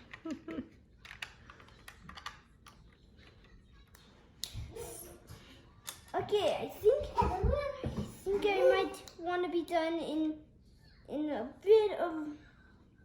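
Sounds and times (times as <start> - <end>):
plastic toy bricks clicking: 1.0 - 3.5.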